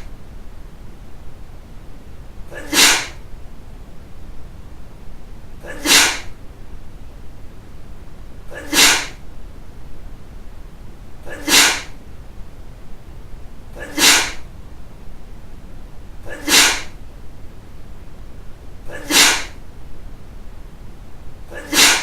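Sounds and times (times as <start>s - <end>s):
person sneezing: 2.5s - 3.2s, 5.6s - 6.4s, 8.5s - 9.2s, 11.2s - 12.0s, 13.7s - 14.5s, 16.2s - 17.0s, 18.8s - 19.6s, 21.5s - 22.0s.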